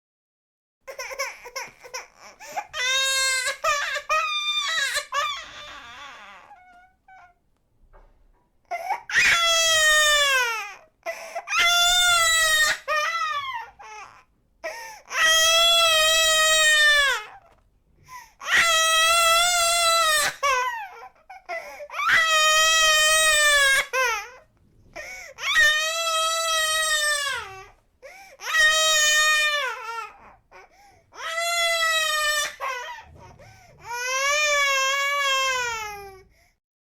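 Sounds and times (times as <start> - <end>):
baby sobbing breaths: 0.9 - 2.9, 11.0 - 11.5, 24.2 - 25.5, 28.0 - 28.5
baby crying: 0.9 - 7.4, 8.7 - 17.6, 18.4 - 36.3.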